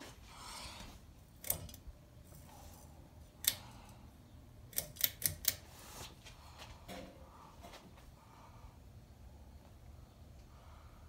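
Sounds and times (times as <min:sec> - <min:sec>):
ceiling fan switch clicks: 0:03.4 - 0:03.8, 0:04.7 - 0:05.7.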